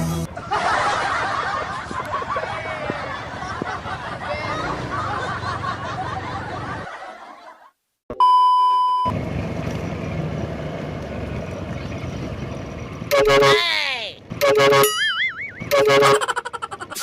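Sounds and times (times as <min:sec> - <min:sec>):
street and traffic noise: 0:00.0 - 0:07.6, 0:09.0 - 0:17.0
people chuckling: 0:00.3 - 0:07.7, 0:16.1 - 0:17.0
loud electronic beep: 0:13.1 - 0:13.6, 0:14.4 - 0:16.3.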